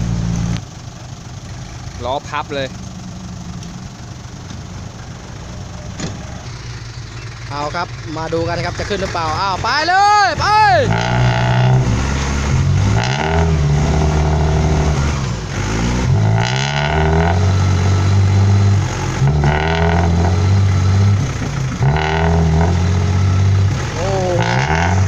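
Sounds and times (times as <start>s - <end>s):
diesel truck engine revving hard: 5.4s - 25.0s.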